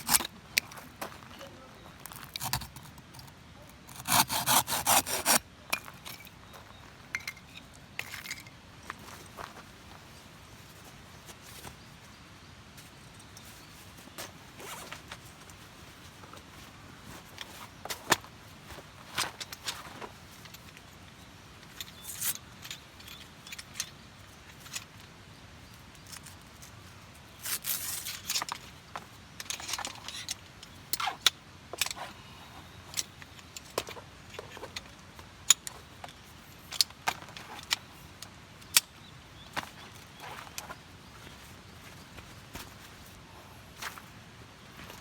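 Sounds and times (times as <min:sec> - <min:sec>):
small metallic clinks and rattles: 0:07.1 - 0:08.6, 0:19.2 - 0:25.0
gear rustling: 0:31.8 - 0:45.0.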